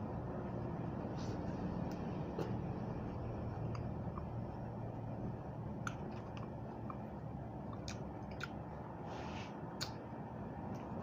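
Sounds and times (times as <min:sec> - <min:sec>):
low background hum: 0:00.0 - 0:11.0
chewing raw vegetables: 0:03.6 - 0:04.6, 0:05.8 - 0:08.9.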